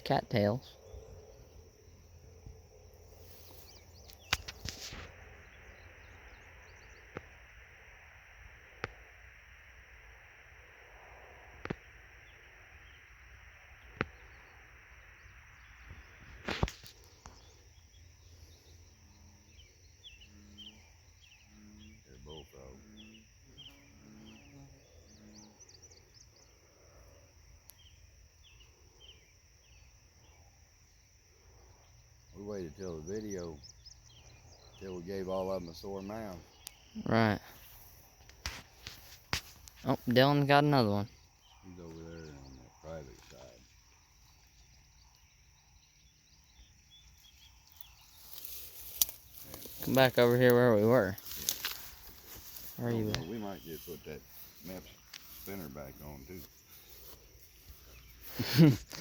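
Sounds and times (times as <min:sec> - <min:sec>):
small birds chirping: 0:00.0 - 0:08.0, 0:11.4 - 0:59.0
high insect drone: 0:00.0 - 0:59.0
sharp clicks: 0:04.0 - 0:05.1.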